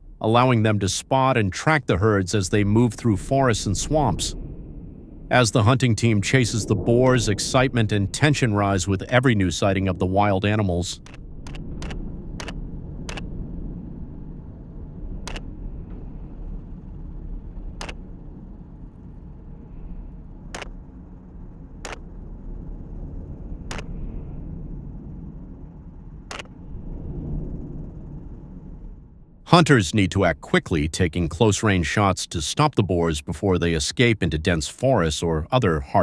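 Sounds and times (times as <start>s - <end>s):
helicopter rumble: 0.0s - 4.6s, 5.3s - 13.3s, 14.0s - 36.0s
sharp cracks: 11.0s - 13.3s, 15.2s - 15.5s, 17.8s - 18.1s, 20.5s - 20.8s, 21.8s - 22.2s, 23.7s - 24.0s, 26.2s - 26.6s.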